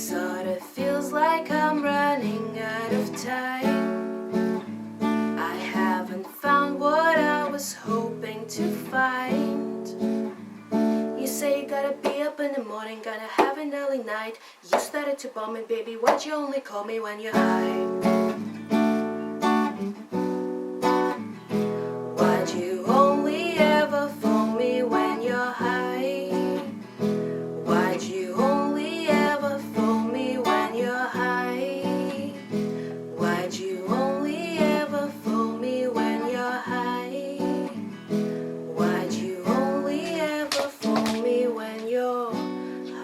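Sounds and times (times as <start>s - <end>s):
acoustic guitar strumming chords: 0.0s - 12.3s, 17.3s - 43.0s
wordless wavering voice melody: 38.6s - 42.3s.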